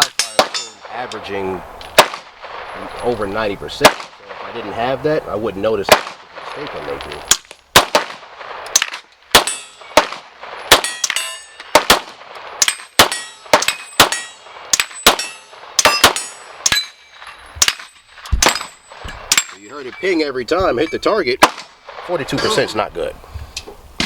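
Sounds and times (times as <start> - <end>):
bullets pinging steel targets: 0.0 - 1.2, 7.3 - 21.8
gunshots: 0.0 - 5.1, 5.8 - 17.0, 17.6 - 20.2, 21.3 - 22.3.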